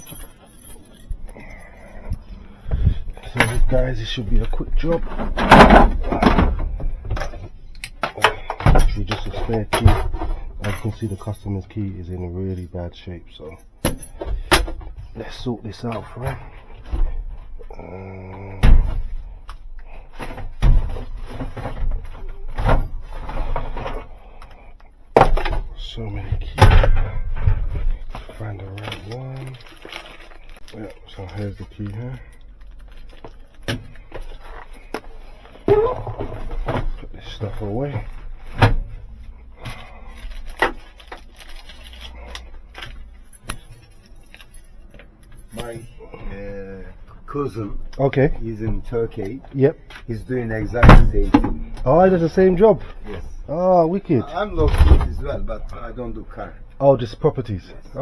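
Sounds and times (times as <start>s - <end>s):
keys and tools clinking: 0.0s - 6.4s, 8.1s - 12.7s, 13.4s - 14.8s, 39.6s - 46.0s, 50.6s - 51.4s
cupboard doors and drawers: 5.0s - 7.5s, 54.6s - 55.4s.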